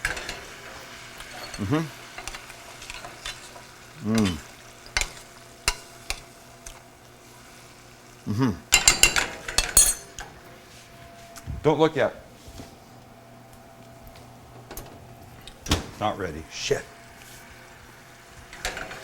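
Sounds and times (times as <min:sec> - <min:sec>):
chicken sizzling in a pan: 0:00.0 - 0:09.8.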